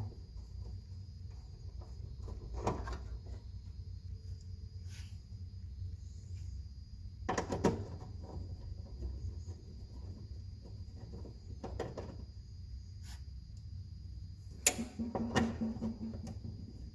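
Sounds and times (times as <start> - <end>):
steady low hum: 0.0 - 16.9.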